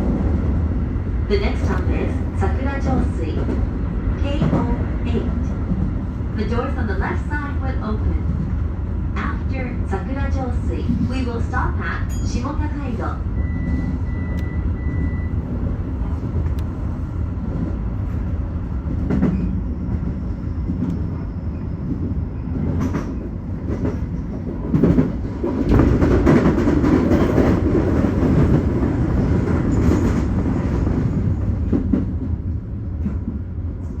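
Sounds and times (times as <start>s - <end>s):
train wheels rumbling on rails: 0.0s - 34.0s
train knocks: 21.9s - 32.4s.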